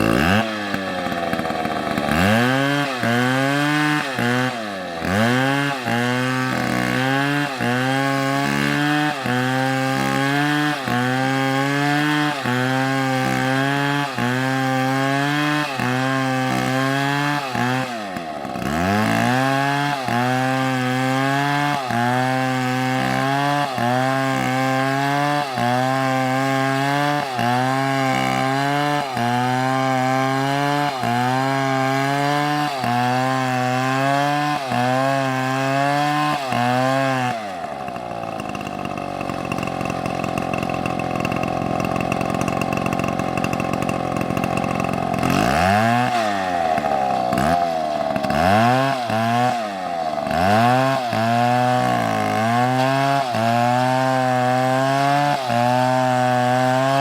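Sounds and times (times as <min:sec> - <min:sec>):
chainsaw engine running: 0:00.0 - 0:57.0.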